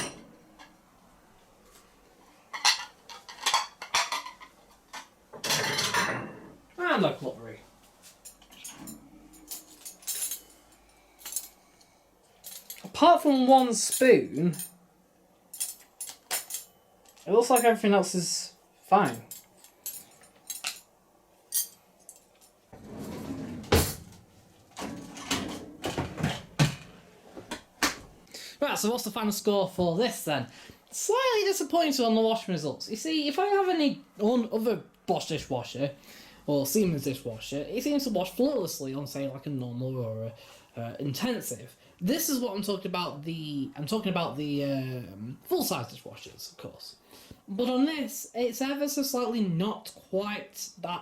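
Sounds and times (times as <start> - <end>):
crockery and cutlery clinking: 0.0 - 0.8, 2.5 - 6.6, 8.2 - 11.6
dishes and racks clattering: 0.0 - 0.8, 2.5 - 6.6, 8.3 - 11.6, 22.8 - 24.2, 24.8 - 28.0
cutlery clinking: 8.3 - 11.6.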